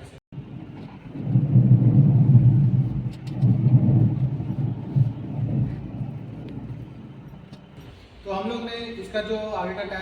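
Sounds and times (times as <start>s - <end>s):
car engine rumble: 0.4s - 8.1s.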